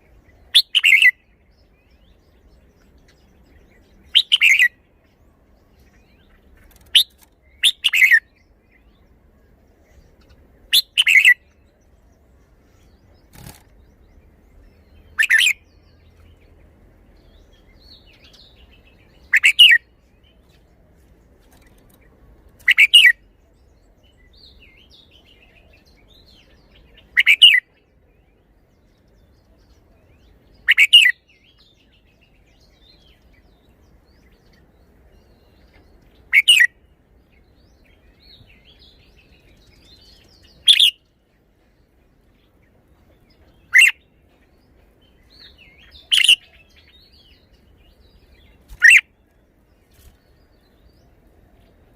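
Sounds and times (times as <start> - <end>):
bird singing song phrases: 0.0 - 51.9.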